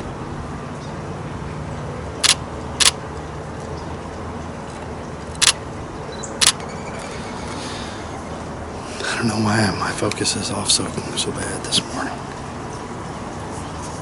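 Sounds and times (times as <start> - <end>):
camera shutter clicks: 2.2 - 3.0, 5.3 - 5.6, 6.4 - 6.6.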